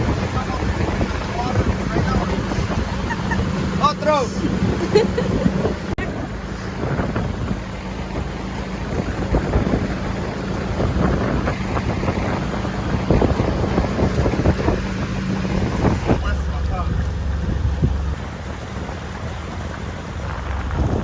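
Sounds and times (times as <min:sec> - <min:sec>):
boat motor running: 0:00.0 - 0:21.0
wind buffeting microphone: 0:00.0 - 0:21.0.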